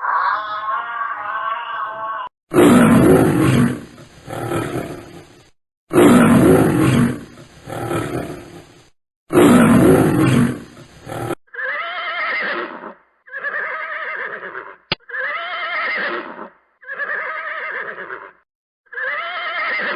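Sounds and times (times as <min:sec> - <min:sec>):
large animal roaring: 0:00.0 - 0:08.7, 0:09.3 - 0:11.4.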